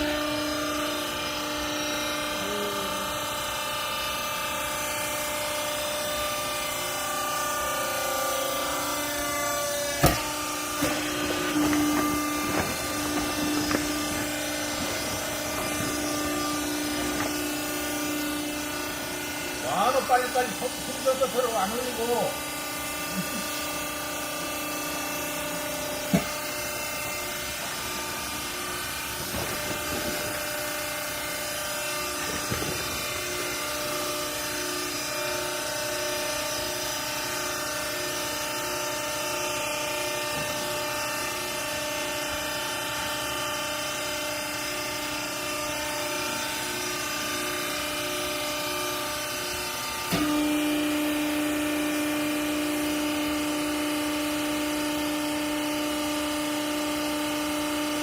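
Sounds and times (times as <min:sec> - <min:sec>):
baler motor and pump humming: 0:00.0 - 0:58.0.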